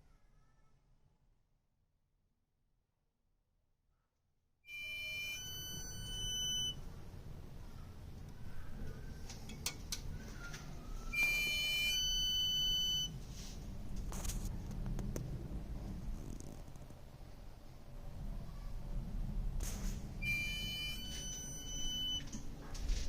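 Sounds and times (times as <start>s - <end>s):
low rumble: 13.2s - 23.0s.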